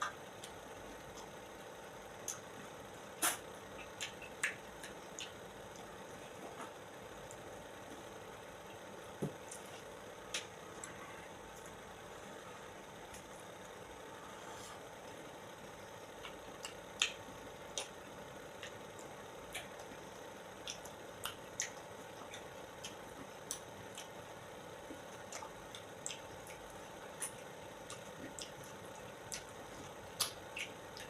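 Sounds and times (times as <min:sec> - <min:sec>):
steady low hum: 0:00.0 - 0:31.0
wet mouth eating sounds: 0:02.2 - 0:07.4, 0:16.2 - 0:20.0, 0:20.6 - 0:31.0.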